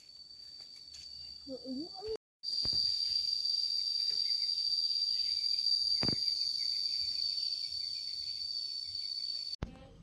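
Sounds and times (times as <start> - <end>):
insects droning shrilly: 2.5 - 9.6.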